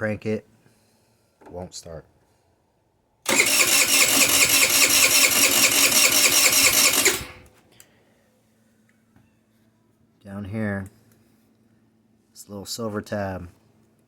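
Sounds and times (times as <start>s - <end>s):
scooter engine cranking: 3.3s - 7.5s.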